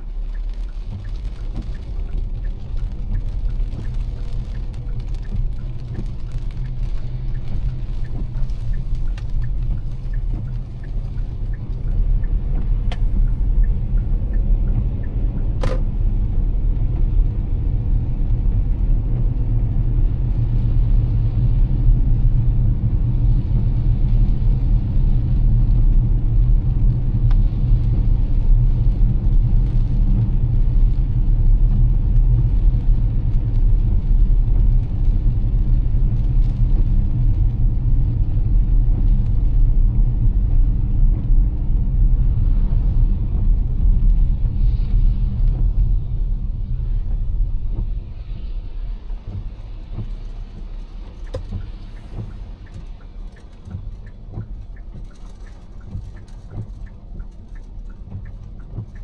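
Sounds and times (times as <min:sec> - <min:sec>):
tyre and road rumble: 0:00.0 - 0:18.4, 0:33.6 - 0:59.0
rain and spray hiss: 0:00.0 - 0:59.0.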